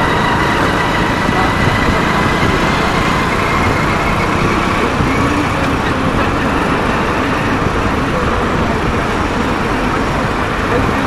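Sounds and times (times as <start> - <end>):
road traffic noise: 0.0 - 11.0.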